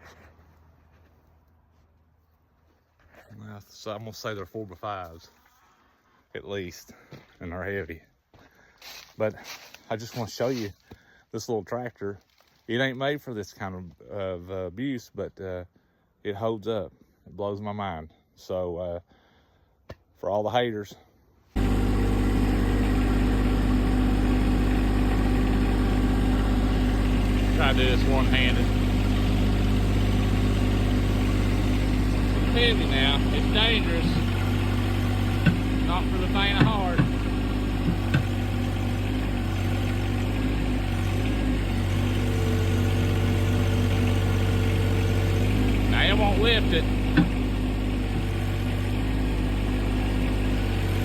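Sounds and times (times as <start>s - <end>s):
steady whine: 21.6s - 38.7s
garden tractor engine running: 21.6s - 51.0s.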